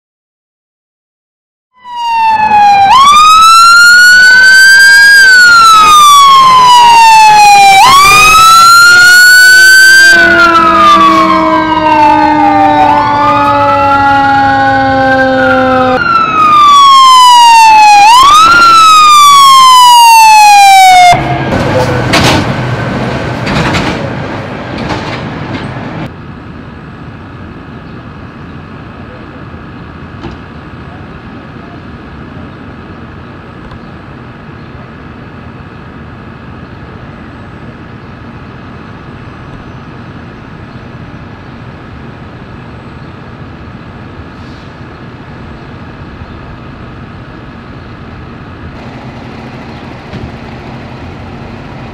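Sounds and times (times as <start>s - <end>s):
emergency siren wailing: 1.7s - 22.0s, 45.0s - 51.9s
engine and street noise: 1.7s - 51.9s
slower falling siren tone: 1.8s - 21.2s.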